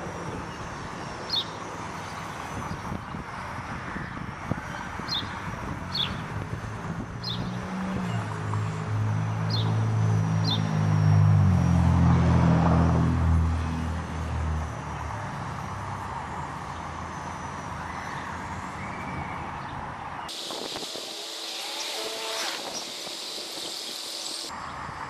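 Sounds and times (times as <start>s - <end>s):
rc helicopter rotor humming: 0.0s - 11.8s, 13.5s - 19.6s, 20.3s - 24.6s
wind noise on microphone: 2.3s - 8.3s, 20.3s - 25.0s.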